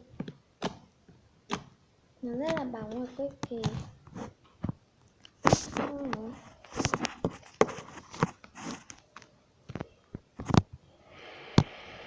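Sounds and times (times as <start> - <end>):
faint hiss: 10.8 - 12.0.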